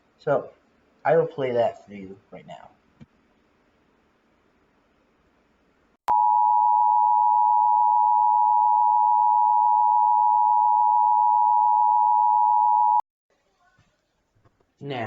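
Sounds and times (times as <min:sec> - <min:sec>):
steady emergency alert tone: 0:06.1 - 0:13.0.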